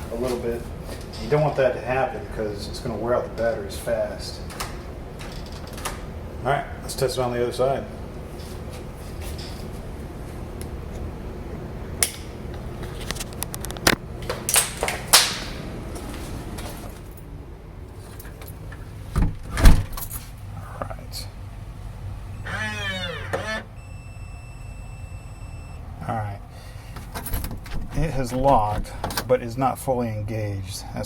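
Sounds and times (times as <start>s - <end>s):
lock motor whirring: 22.4s - 24.7s
steady beep: 23.8s - 25.9s.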